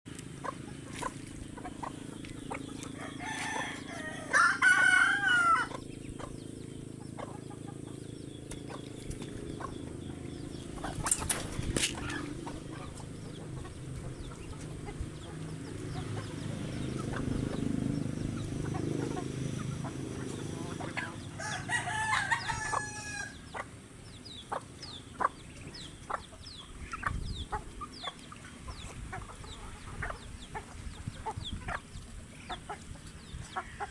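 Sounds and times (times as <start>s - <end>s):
chickens clucking: 0.1s - 33.9s
rooster crowing: 3.0s - 5.8s, 21.4s - 23.4s.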